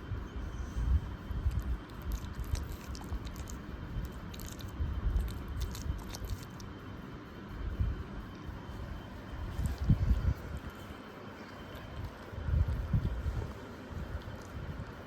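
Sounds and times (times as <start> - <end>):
dog wet mouth and nose sounds: 1.5 - 6.7.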